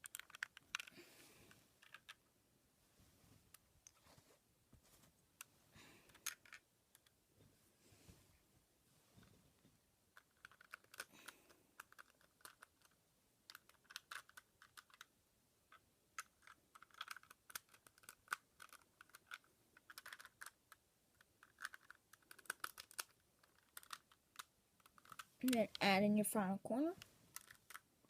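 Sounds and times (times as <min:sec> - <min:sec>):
plastic puzzle cube clicking: 0:00.0 - 0:01.0, 0:01.8 - 0:02.2, 0:06.1 - 0:07.1, 0:10.2 - 0:15.1, 0:15.7 - 0:25.8, 0:27.3 - 0:27.9.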